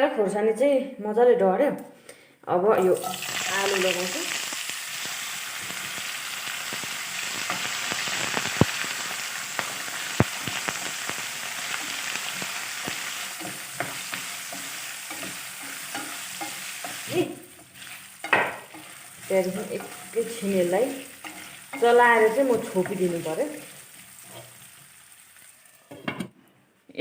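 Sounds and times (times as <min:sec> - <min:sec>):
potatoes sizzling in hot oil: 0:02.8 - 0:26.0
spatula scraping a pan: 0:11.6 - 0:24.9.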